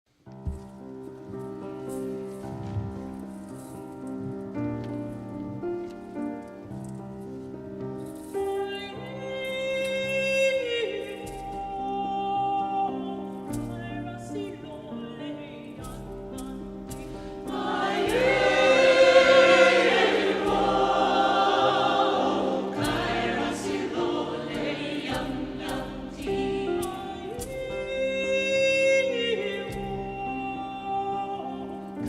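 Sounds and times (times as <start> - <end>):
instrumental accompaniment: 0.3 - 32.0
vocal ensemble singing in harmony: 16.9 - 30.9.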